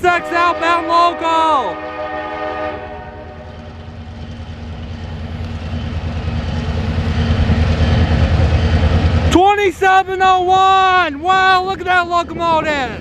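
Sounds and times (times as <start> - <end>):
train horn: 0.0 - 3.8
locomotive engine rumble: 0.0 - 13.0.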